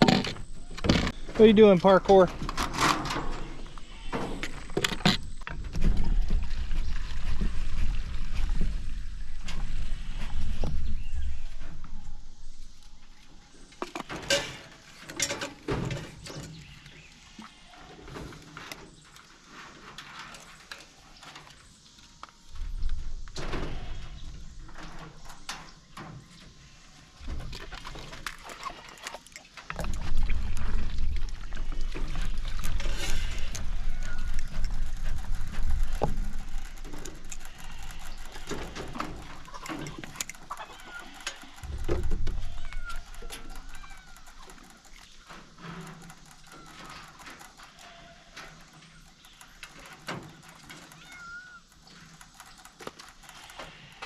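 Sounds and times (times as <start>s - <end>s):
rustling: 0.0s - 54.0s
cat meowing: 50.9s - 51.6s.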